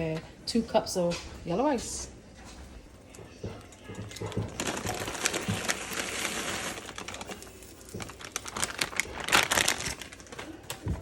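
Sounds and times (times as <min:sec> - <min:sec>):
ingredients crackling into pot: 0:03.0 - 0:11.0
food packaging crinkling: 0:03.6 - 0:11.0.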